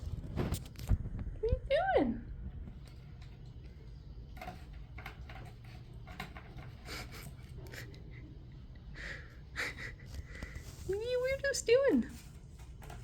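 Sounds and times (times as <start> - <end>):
cats scratching at packaging: 2.7 - 8.0, 10.0 - 13.0.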